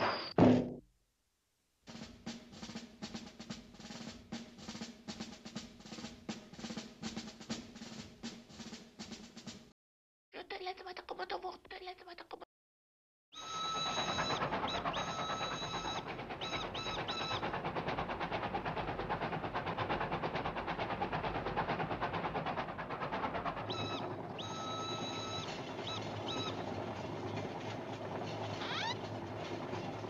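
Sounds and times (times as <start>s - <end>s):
train whistle toots: 13.4s - 17.6s, 23.6s - 26.8s
train clattering: 13.4s - 30.0s.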